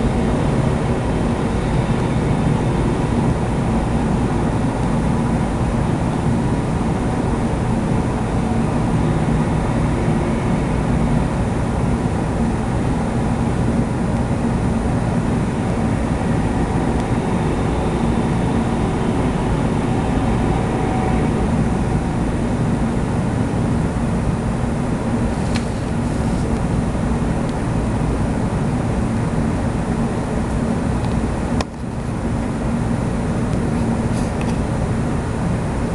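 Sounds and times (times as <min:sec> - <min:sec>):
lawnmower engine running: 0:00.0 - 0:25.2.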